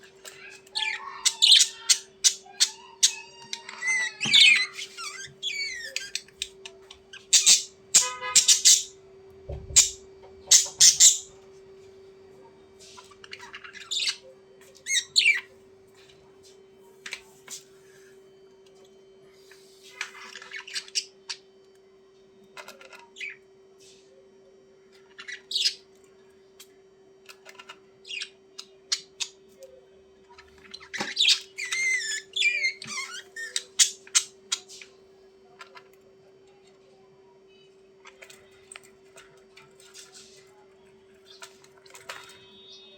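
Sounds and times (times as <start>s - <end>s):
budgerigars chirping and warbling: 0.2s - 11.4s, 12.8s - 15.5s, 19.9s - 21.4s, 25.0s - 25.9s, 27.4s - 29.4s, 30.3s - 35.0s.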